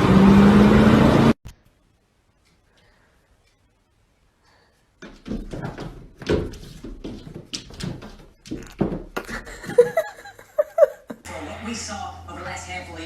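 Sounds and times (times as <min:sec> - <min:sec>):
irregular knocks and thumps: 0:05.0 - 0:10.4.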